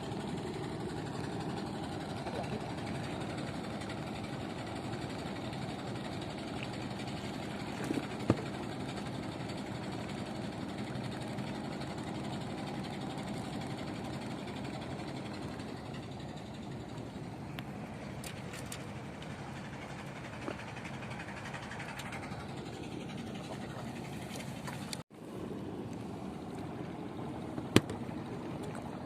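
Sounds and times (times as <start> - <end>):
engine idling: 0.0 - 29.0.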